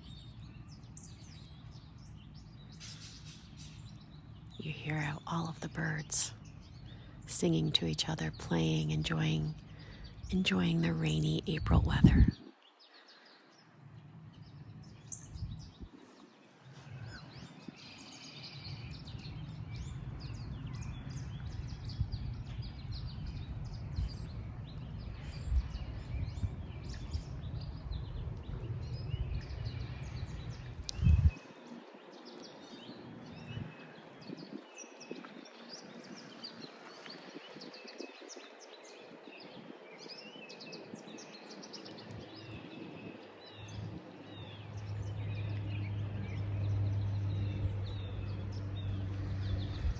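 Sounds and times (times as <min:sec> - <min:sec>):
songbirds singing and chirping: 0:00.0 - 0:49.9
low rumble: 0:13.8 - 0:32.0, 0:43.5 - 0:49.9.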